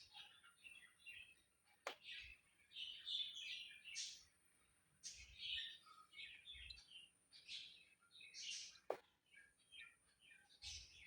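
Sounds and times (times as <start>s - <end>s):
faint small birds chirping: 0.0s - 11.0s.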